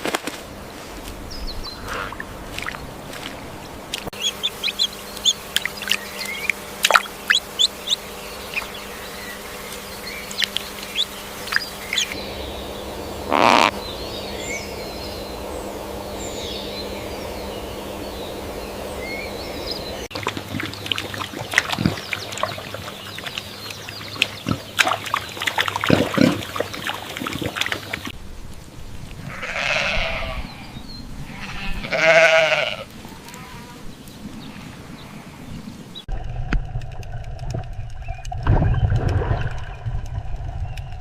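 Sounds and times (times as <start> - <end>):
steady background hum: 0.1 - 33.6
farm animal bleating: 29.2 - 33.8.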